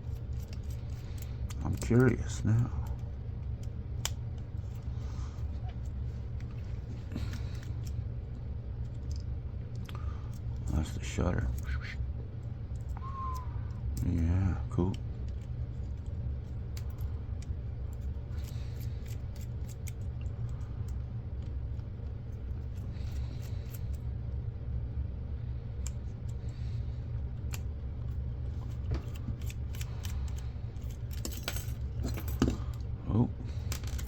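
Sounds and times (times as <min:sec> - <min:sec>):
small parts clicking and tapping: 0:00.0 - 0:04.9, 0:13.9 - 0:21.8, 0:27.4 - 0:32.9, 0:33.5 - 0:34.0
steady low hum: 0:00.0 - 0:34.0.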